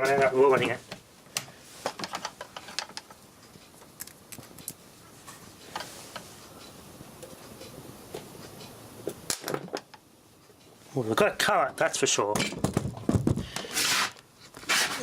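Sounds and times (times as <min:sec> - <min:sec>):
sharp electrical clicks: 0:02.1 - 0:04.9, 0:06.6 - 0:10.7.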